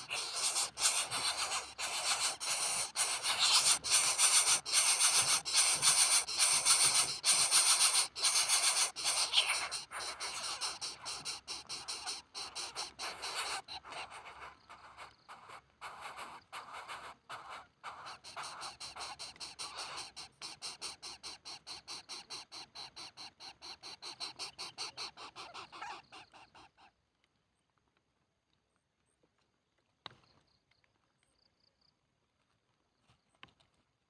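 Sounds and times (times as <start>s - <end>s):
chicks making raspy pulsing calls: 0.0s - 26.9s.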